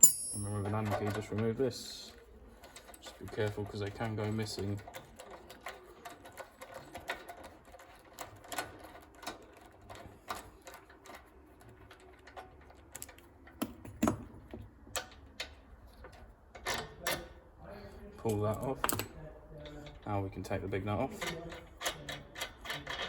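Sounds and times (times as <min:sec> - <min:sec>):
metallic clicks and taps of tools: 0:11.9 - 0:17.3, 0:18.2 - 0:20.1.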